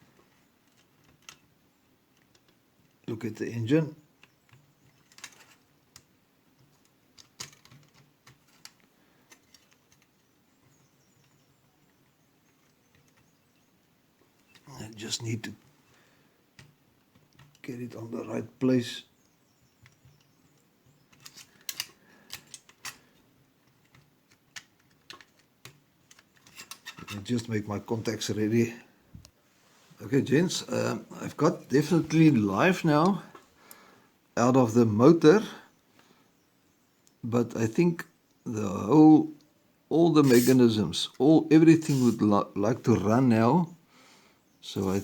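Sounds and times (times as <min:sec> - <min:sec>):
light clicks of small metal parts: 0:00.2 - 0:03.2, 0:04.1 - 0:13.6, 0:14.2 - 0:17.7, 0:19.2 - 0:27.3
light clicks and taps: 0:16.5 - 0:17.7.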